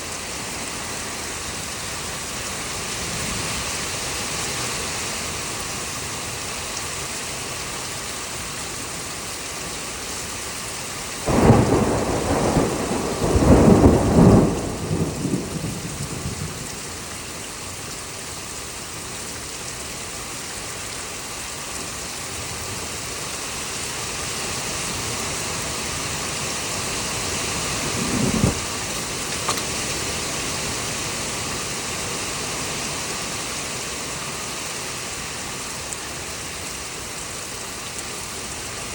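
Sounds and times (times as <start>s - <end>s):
heavy rain: 0.0s - 38.9s
thunder rolling: 11.2s - 17.1s, 27.0s - 29.8s.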